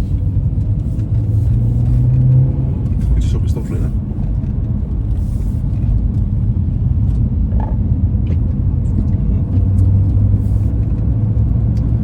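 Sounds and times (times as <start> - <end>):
car engine and road rumble: 0.0 - 12.0.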